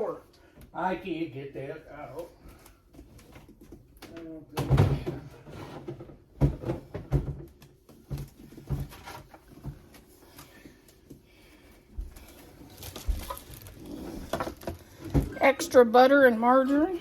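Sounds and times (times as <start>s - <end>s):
containers knocking and thumping: 6.0s - 9.0s.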